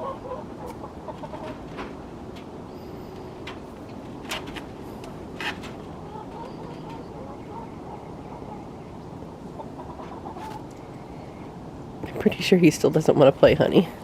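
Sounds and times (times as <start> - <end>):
hens clucking softly: 0.0 - 2.0, 2.8 - 11.5.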